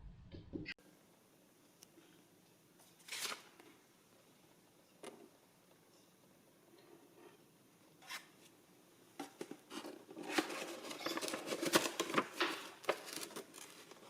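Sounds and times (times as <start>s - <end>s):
packaging rustling and crackling: 9.7s - 14.0s.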